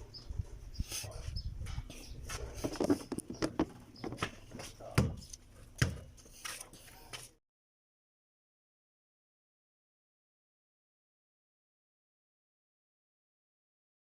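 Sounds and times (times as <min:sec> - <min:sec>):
hand tools clicking and scraping: 0:00.4 - 0:07.4.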